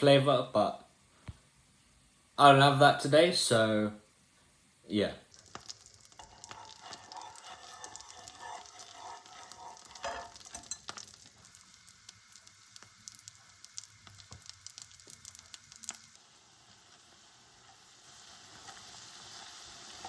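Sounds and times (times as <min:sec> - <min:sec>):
butter sauce sizzling in a pan: 0:05.3 - 0:20.0
whisk scraping a pan: 0:05.9 - 0:11.6.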